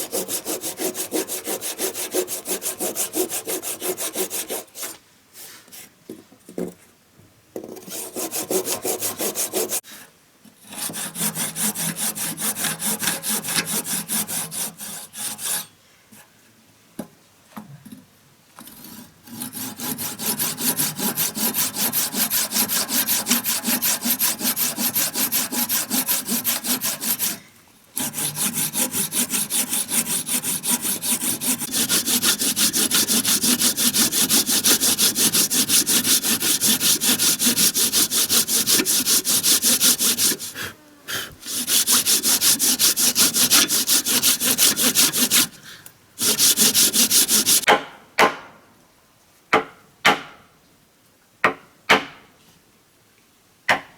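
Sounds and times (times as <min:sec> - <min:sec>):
hand saw cutting wood: 0:00.0 - 0:05.0, 0:07.8 - 0:15.7, 0:18.7 - 0:47.8.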